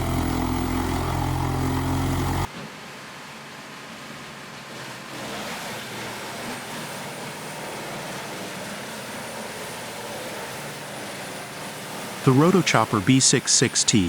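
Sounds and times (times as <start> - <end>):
wood chipper running: 0.0 - 2.5.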